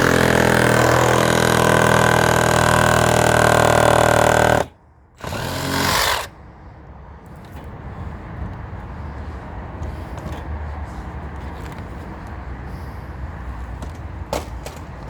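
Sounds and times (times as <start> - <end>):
jigsaw cutting wood: 0.0 - 6.3.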